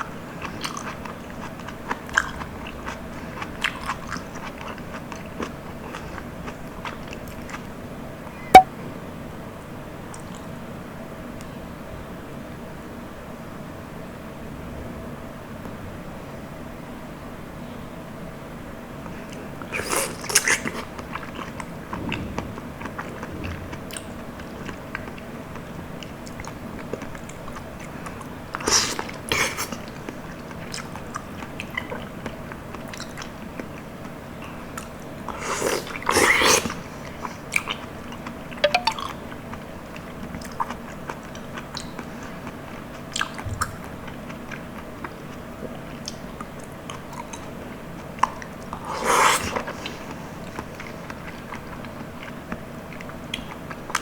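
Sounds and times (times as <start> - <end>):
wet mouth clicks: 38.6 - 39.2.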